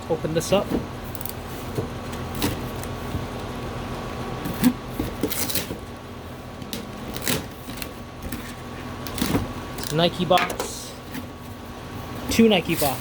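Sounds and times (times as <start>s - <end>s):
low hum: 5.9s - 9.3s.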